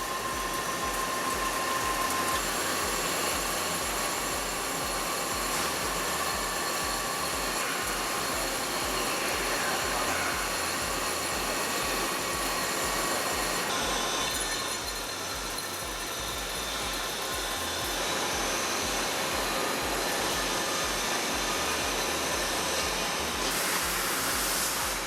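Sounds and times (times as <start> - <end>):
high whining tones: 0.0 - 25.0
lathe machining noise: 0.0 - 25.0.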